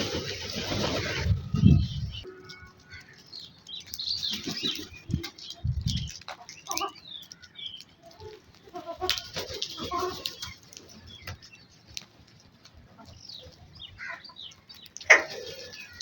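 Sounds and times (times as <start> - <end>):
birds chirping: 0.0 - 16.0.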